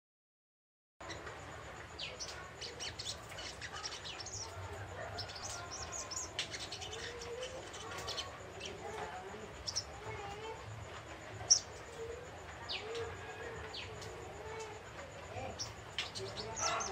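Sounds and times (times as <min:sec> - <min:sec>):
lower wavering bird calls: 0:02.0 - 0:10.6, 0:11.3 - 0:16.9.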